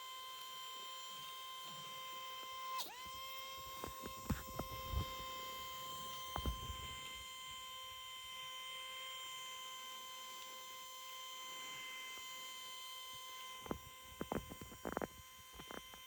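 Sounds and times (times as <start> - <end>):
high electrical whine: 3.2 - 16.0.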